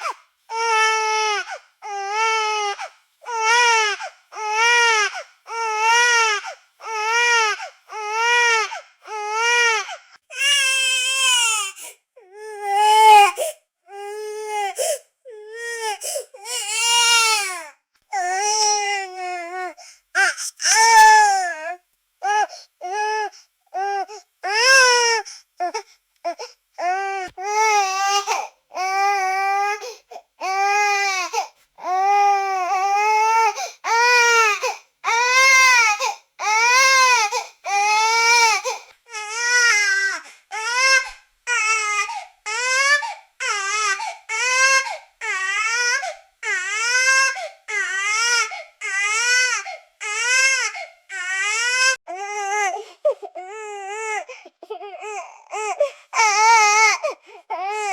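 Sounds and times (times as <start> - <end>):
baby crying: 0.0 - 57.9
baby gasping for breath: 33.6 - 33.8.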